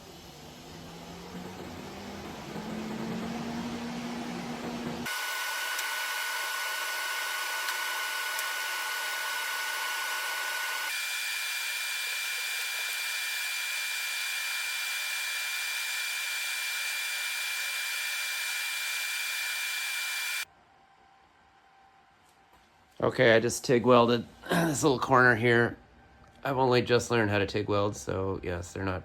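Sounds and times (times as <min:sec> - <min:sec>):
welding arc hissing: 0:05.0 - 0:20.4.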